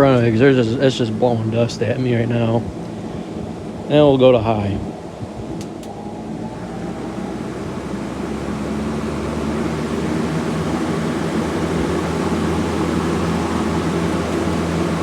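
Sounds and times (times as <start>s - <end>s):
low motor hum: 0.0s - 15.0s
box fan air rushing: 4.9s - 15.0s.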